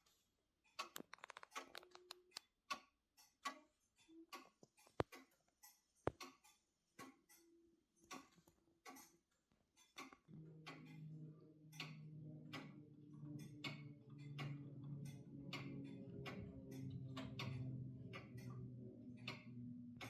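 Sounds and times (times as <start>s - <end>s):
pendulum clock ticking: 7.0s - 9.2s, 9.8s - 20.0s
soft low pipe organ notes: 10.3s - 20.0s.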